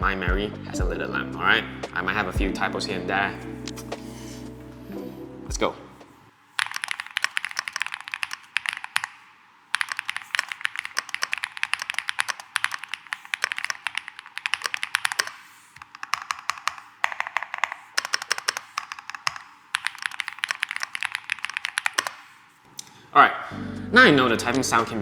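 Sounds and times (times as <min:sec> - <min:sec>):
mechanical keyboard typing: 0:06.6 - 0:22.4.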